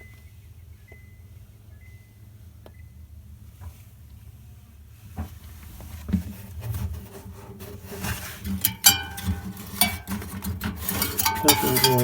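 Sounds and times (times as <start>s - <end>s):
refrigerator parts knocking and rattling: 6.1s - 12.0s.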